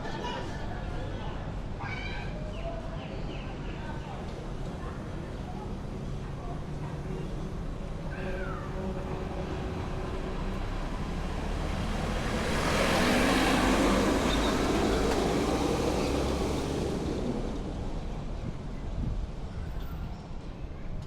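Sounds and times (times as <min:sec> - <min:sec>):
traffic hum: 0:00.0 - 0:21.0
vehicle passing by: 0:09.5 - 0:18.2.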